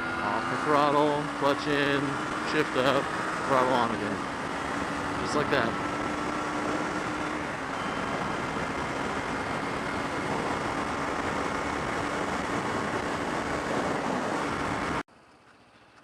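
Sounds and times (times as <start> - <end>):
motorcycle engine running: 0.0 - 16.0
road noise: 0.0 - 16.0
wind rush: 4.1 - 15.0.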